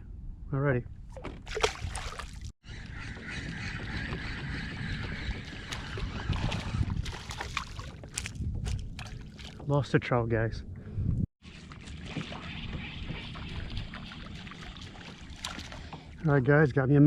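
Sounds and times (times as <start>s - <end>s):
wind: 0.0s - 17.0s
water rushing around boat: 11.4s - 16.2s.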